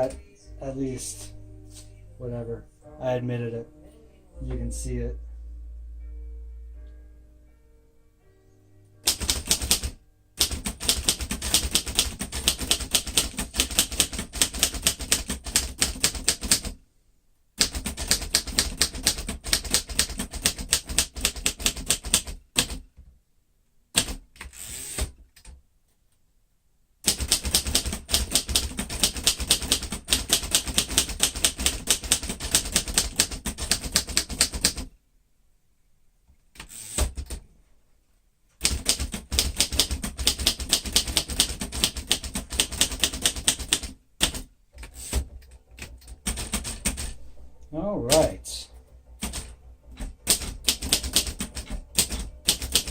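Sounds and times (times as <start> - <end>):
manual typewriter typing: 9.0 - 16.8, 17.6 - 22.8, 23.9 - 25.1, 27.0 - 34.9, 38.6 - 47.2, 49.1 - 52.9.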